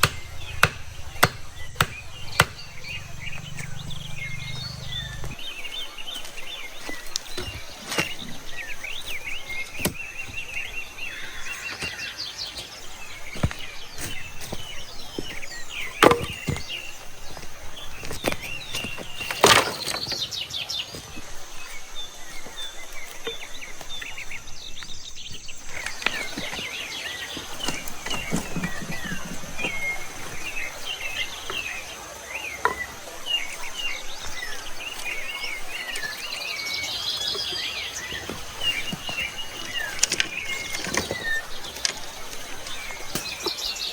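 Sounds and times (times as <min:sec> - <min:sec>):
sharp wooden knocks: 0:00.0 - 0:05.4, 0:15.2 - 0:16.8
birds chirping: 0:00.0 - 0:43.9
high insect drone: 0:00.0 - 0:43.9.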